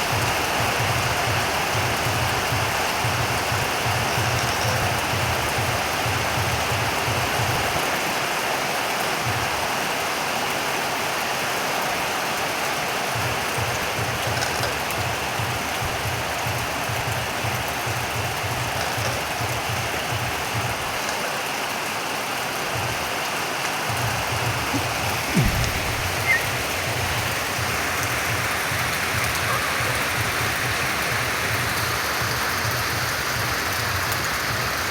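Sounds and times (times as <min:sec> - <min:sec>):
steady rain hiss: 0:00.0 - 0:34.9
low pulsing rumble: 0:24.7 - 0:28.1.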